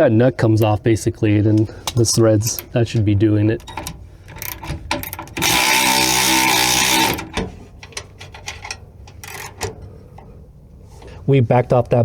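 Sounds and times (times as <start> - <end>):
tool handling clicks and knocks: 0.6 - 11.2
cordless power tool running: 4.4 - 7.4.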